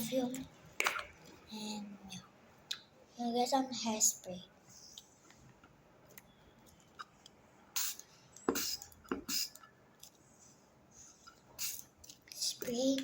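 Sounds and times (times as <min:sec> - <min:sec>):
spray bottle spritzing: 0:07.8 - 0:09.6, 0:11.6 - 0:11.9.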